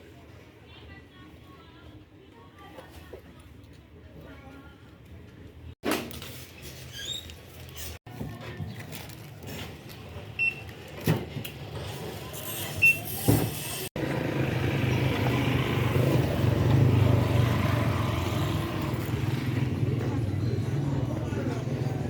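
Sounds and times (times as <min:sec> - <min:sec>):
vehicle traffic rumble: 0:06.5 - 0:22.0.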